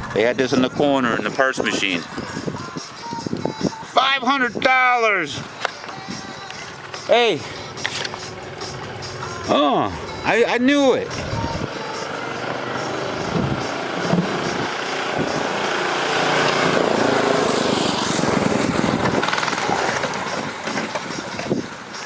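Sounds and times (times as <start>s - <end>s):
motor vehicle passing by: 10.8s - 21.9s.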